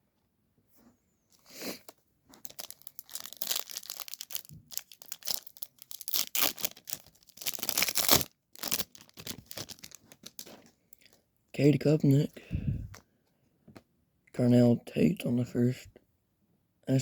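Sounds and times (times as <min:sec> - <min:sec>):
foil wrapper tearing and crinkling: 0:01.8 - 0:10.7.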